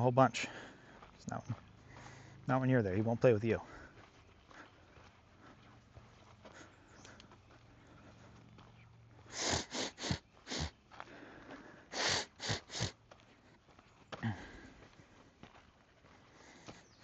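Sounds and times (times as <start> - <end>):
sharp close sniffs: 9.3 - 10.7, 11.9 - 13.0.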